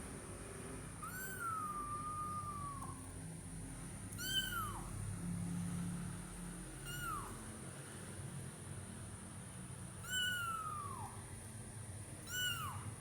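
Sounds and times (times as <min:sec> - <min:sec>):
kitten meowing: 0:01.0 - 0:03.0, 0:04.2 - 0:04.9, 0:06.8 - 0:07.4, 0:10.0 - 0:11.2, 0:12.2 - 0:13.0.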